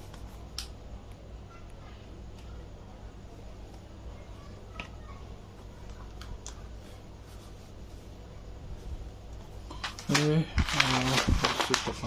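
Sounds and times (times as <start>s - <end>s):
low steady hum: 0.0s - 12.0s
packets clicking and tapping: 9.8s - 12.0s.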